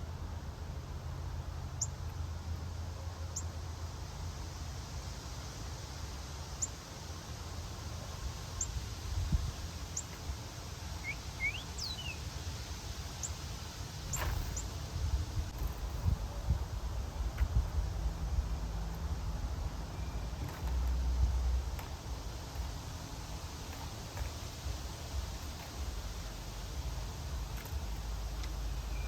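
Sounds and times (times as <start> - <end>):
low outdoor rumble: 0.0 - 29.0
songbird chip notes: 9.8 - 14.8, 17.0 - 29.0
bird sliding call notes: 11.0 - 12.2.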